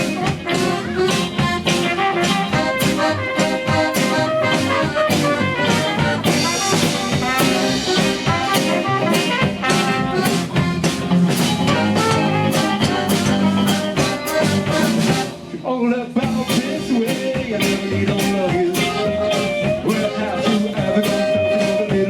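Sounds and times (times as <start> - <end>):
brass horns playing melody: 0.0 - 15.5
drum-kit beat: 0.0 - 15.6, 16.2 - 22.0.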